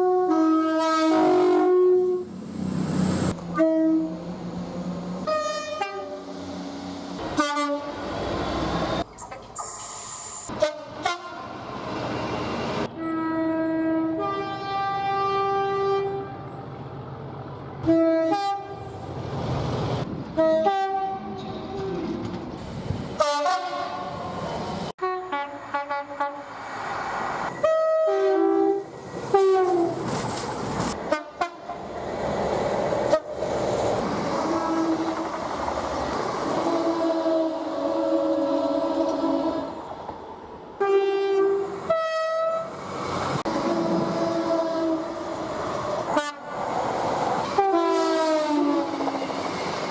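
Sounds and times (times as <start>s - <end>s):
train two-tone horn blasts: 0.0s - 2.3s, 3.5s - 4.2s, 5.2s - 6.3s, 7.2s - 8.0s, 10.5s - 11.5s, 13.0s - 16.5s, 17.8s - 18.9s, 20.4s - 21.9s, 23.2s - 24.3s, 25.0s - 26.5s, 27.6s - 30.0s, 31.1s - 31.8s, 36.6s - 39.8s, 40.8s - 42.7s, 43.6s - 45.3s, 46.1s - 46.6s, 47.4s - 49.3s
passing train rumble and rail clatter: 0.0s - 49.9s.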